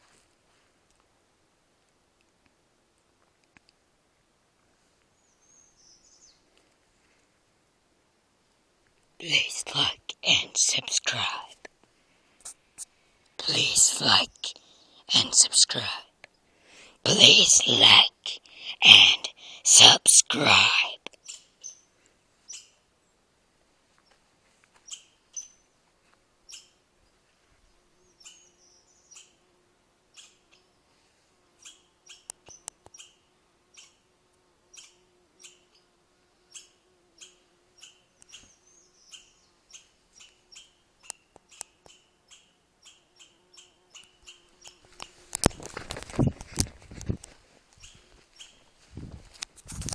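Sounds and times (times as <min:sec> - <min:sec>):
chipmunk chip calls: 0:21.1 - 0:21.9, 0:22.5 - 0:22.8, 0:24.8 - 0:25.6, 0:26.5 - 0:26.8, 0:28.0 - 0:29.4, 0:30.1 - 0:30.7, 0:31.6 - 0:34.0, 0:34.7 - 0:35.8, 0:36.5 - 0:45.7.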